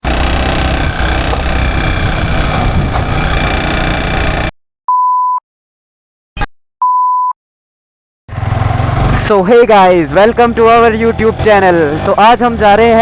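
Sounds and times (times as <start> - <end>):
motorcycle running: 0.0 - 4.5, 8.3 - 13.0
wind rush: 0.8 - 3.6
short steady beeps: 4.9 - 5.4, 6.8 - 7.4.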